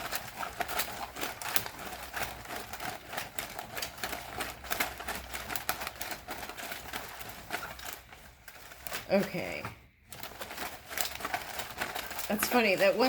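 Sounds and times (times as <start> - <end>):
cards being shuffled: 0.0 - 13.0.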